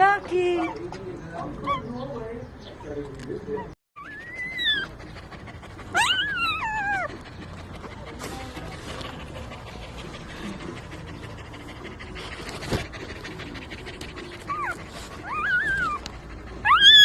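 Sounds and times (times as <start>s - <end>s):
dog panting: 0.0s - 2.4s, 3.5s - 17.0s
puppy whining: 0.4s - 2.4s, 3.4s - 7.5s, 10.4s - 17.0s.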